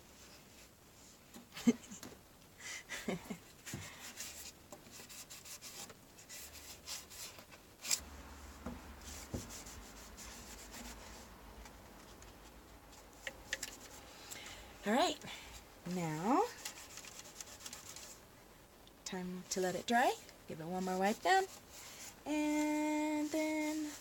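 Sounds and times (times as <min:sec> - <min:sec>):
hand rubbing wood: 0:03.6 - 0:15.2, 0:16.1 - 0:18.2.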